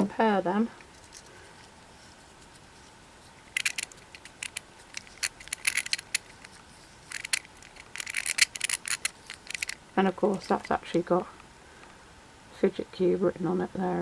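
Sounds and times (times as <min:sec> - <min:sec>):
plastic fidget cube clicks: 0:03.5 - 0:09.8.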